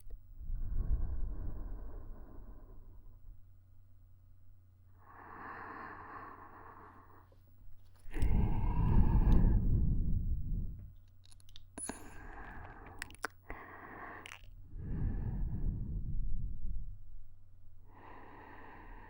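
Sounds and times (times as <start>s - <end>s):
breathing into a microphone: 8.0s - 10.9s, 11.8s - 16.6s, 17.9s - 19.0s.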